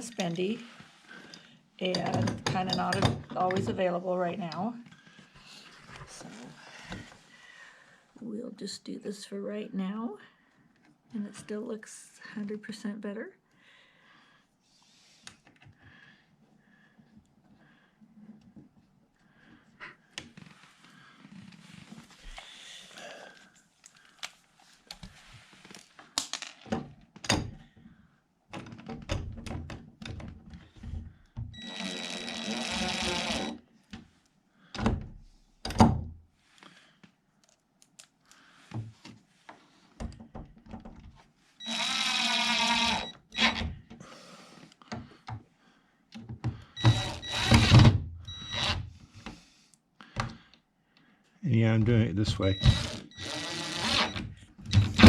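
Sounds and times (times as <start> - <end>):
cordless drill whirring: 31.6 - 33.6, 41.6 - 43.6, 46.8 - 48.9, 52.4 - 55.0.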